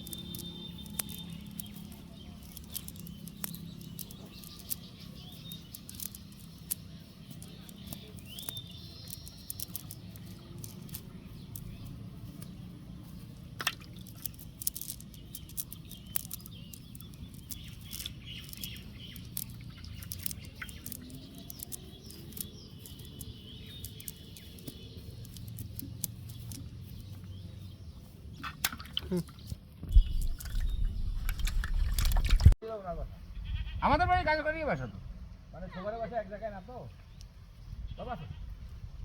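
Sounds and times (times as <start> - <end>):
sharp clicks: 0.0 - 12.6, 13.2 - 27.3
small birds chirping: 0.0 - 39.0.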